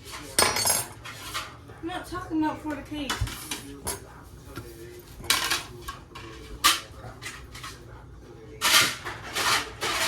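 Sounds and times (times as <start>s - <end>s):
plates and dishes clattering: 0.0s - 1.7s, 3.0s - 7.9s, 8.6s - 10.0s.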